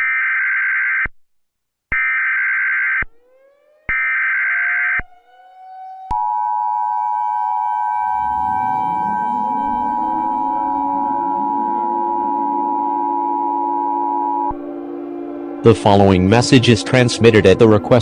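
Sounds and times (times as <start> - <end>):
two-tone attention signal: 4.6 - 18.0
low rumble: 7.1 - 18.0
screeching digital data bursts: 7.4 - 18.0.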